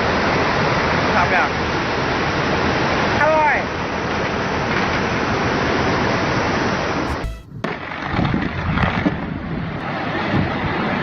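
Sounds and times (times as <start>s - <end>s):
rushing floodwater: 0.0s - 6.9s
wind noise: 7.1s - 11.0s.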